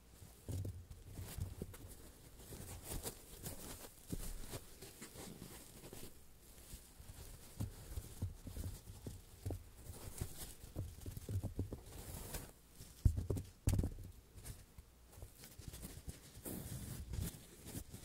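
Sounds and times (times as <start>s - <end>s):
foam blocks tapped and squished: 7.5s - 11.9s, 12.9s - 14.2s.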